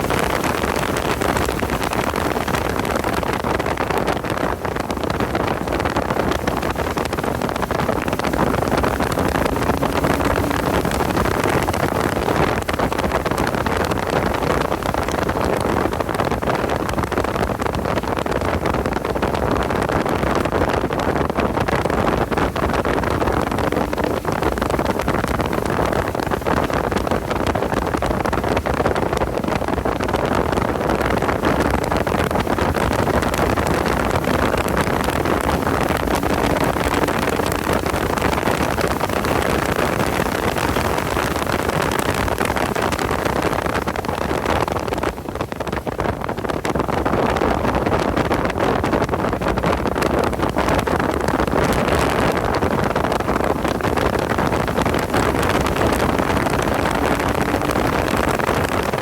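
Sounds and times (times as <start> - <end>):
wind buffeting microphone: 0.0 - 59.0
car engine running: 6.0 - 13.7, 33.0 - 39.6.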